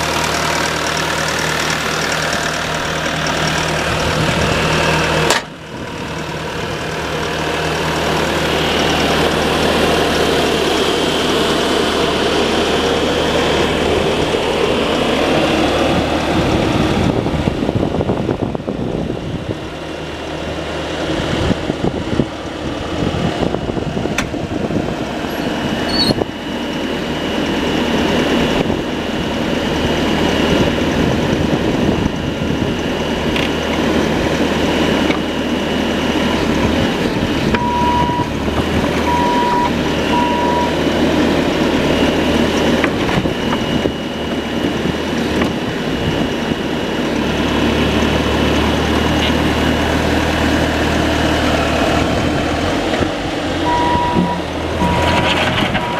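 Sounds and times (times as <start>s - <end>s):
diesel engine running: 0.0s - 55.9s
high hydraulic whine: 0.0s - 55.9s
short electronic beeps: 37.6s - 38.3s, 39.1s - 40.8s, 53.6s - 55.9s.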